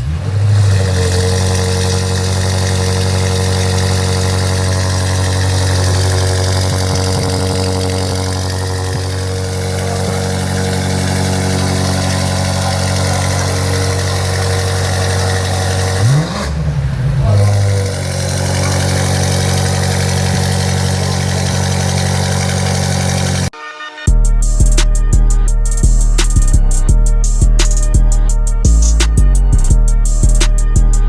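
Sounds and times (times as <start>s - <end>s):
car engine idling: 0.0s - 23.6s
engine revving: 0.0s - 23.6s, 24.4s - 31.0s.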